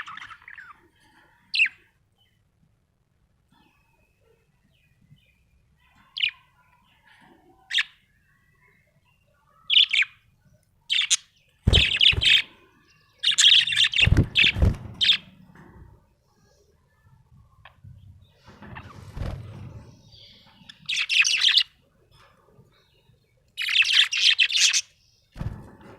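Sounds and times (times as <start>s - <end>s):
low thumps: 11.6s - 12.4s.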